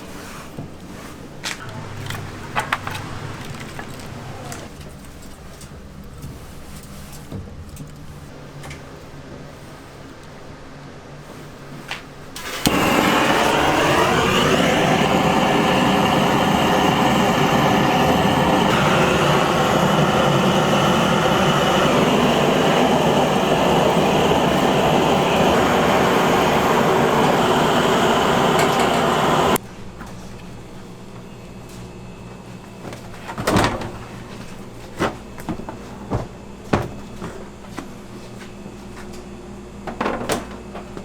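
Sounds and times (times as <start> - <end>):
kitchen machine electric motor: 1.5 - 6.1, 12.4 - 29.6.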